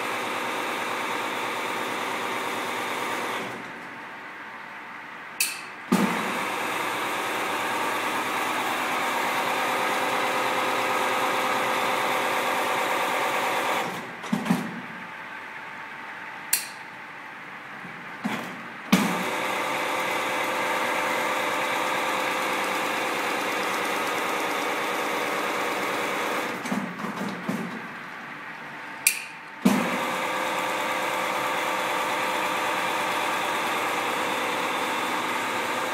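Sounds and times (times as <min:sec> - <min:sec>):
fence weaving machine motor hum: 0:00.0 - 0:04.0, 0:05.9 - 0:16.4, 0:18.2 - 0:28.6, 0:29.5 - 0:35.9.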